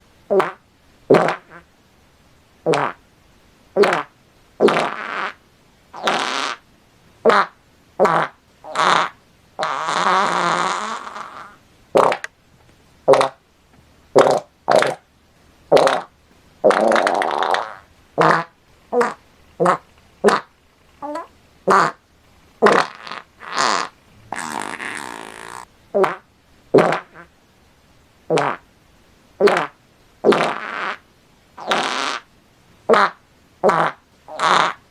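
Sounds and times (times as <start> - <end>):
fart sound effects: 0.3 - 1.7, 2.7 - 3.0, 3.8 - 5.4, 6.0 - 6.6, 7.2 - 12.3, 13.1 - 13.4, 14.2 - 15.0, 15.7 - 22.0, 22.6 - 27.3, 28.3 - 28.6, 29.4 - 31.0, 31.6 - 32.2, 32.9 - 34.8.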